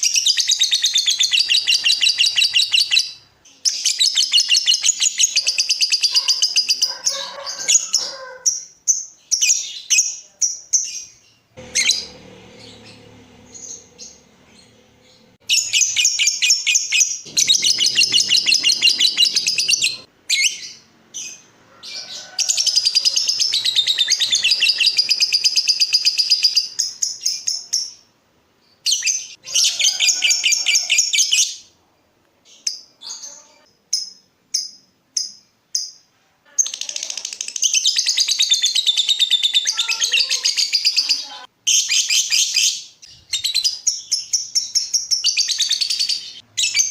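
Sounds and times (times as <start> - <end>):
lovebird rapid trills: 17.2 - 20.1.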